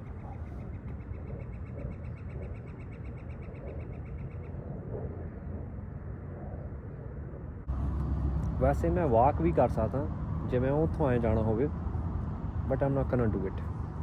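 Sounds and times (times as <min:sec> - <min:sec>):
bird trilling: 0:00.0 - 0:05.6
low outdoor rumble: 0:00.0 - 0:14.0.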